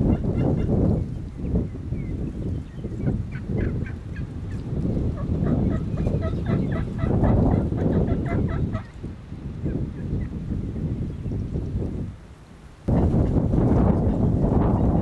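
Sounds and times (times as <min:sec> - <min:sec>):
wind rumble: 0:00.0 - 0:15.0
turkey gobbling: 0:05.2 - 0:08.9.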